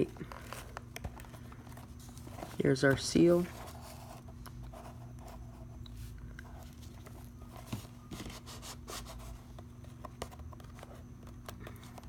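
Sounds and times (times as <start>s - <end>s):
steady low hum: 0.0s - 12.0s
hands handling cardboard box: 6.6s - 12.0s.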